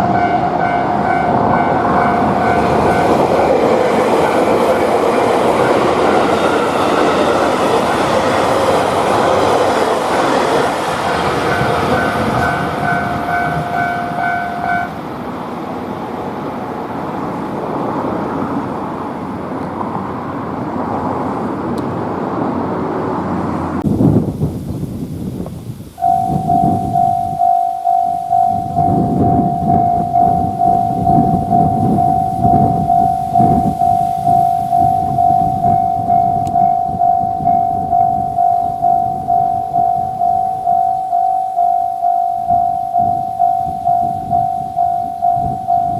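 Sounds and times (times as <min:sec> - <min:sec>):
train wheels clattering on rails: 0:00.0 - 0:15.2
crossing warning bell ringing: 0:00.0 - 0:15.3, 0:26.0 - 0:45.9.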